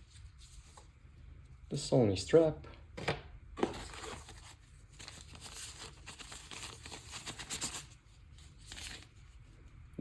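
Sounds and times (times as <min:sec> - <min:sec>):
packaging rustling: 0:03.6 - 0:09.3.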